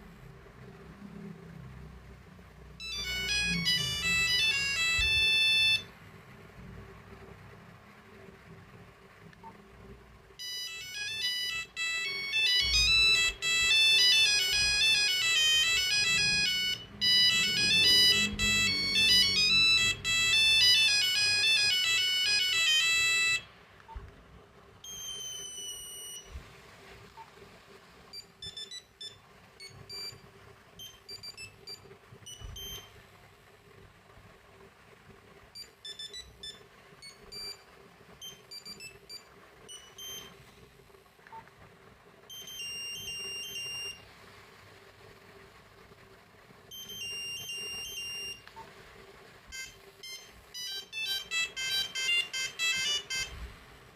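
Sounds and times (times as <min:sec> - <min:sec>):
monophonic ringtone melody: 0:02.8 - 0:05.9, 0:10.4 - 0:23.6, 0:24.8 - 0:26.4, 0:30.8 - 0:32.9, 0:39.7 - 0:40.3, 0:42.3 - 0:44.0, 0:46.7 - 0:48.4, 0:49.5 - 0:53.5
short beeps: 0:24.8 - 0:26.3, 0:32.3 - 0:32.9, 0:38.2 - 0:40.3, 0:42.3 - 0:44.0, 0:46.7 - 0:48.4.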